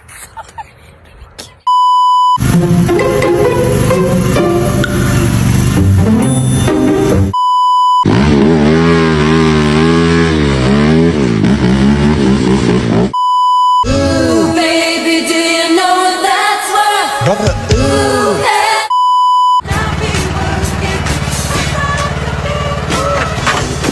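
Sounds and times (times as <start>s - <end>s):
censor bleeps: 1.7s - 2.4s, 6.2s - 8.1s, 13.2s - 13.9s, 18.9s - 19.6s
music with wavering drone: 2.4s - 7.4s, 19.6s - 23.9s.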